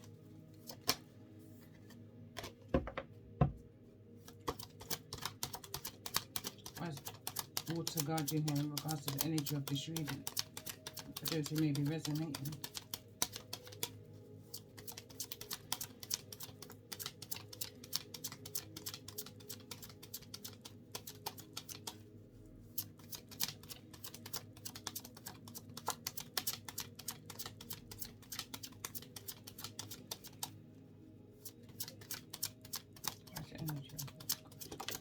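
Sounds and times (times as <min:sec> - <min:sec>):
cards being shuffled: 0:00.6 - 0:02.6, 0:04.2 - 0:22.0, 0:22.6 - 0:30.6, 0:31.4 - 0:35.0.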